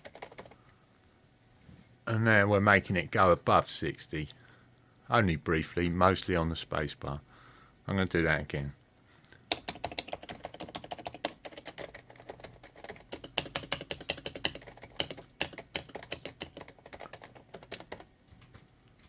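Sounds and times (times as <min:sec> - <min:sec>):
keyboard keys mashed rapidly: 0:00.0 - 0:00.6, 0:09.5 - 0:18.1.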